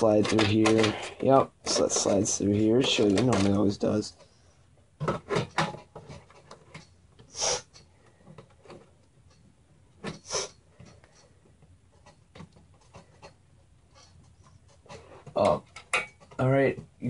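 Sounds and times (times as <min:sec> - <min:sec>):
breathy sniffs: 0:07.3 - 0:07.8, 0:10.1 - 0:10.6.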